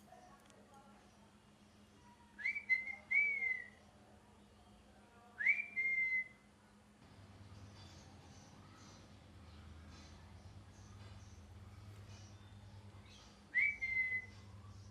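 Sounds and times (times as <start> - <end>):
parrot whistled calls: 13.6 - 14.4.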